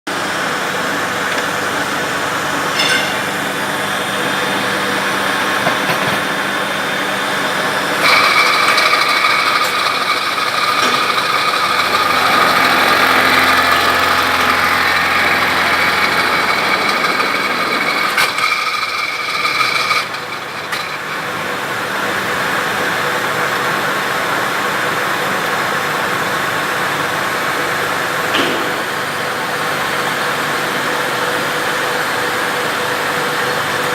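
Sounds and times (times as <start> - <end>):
cutter high whine: 0.1 - 24.5
milling machine running: 0.1 - 33.9.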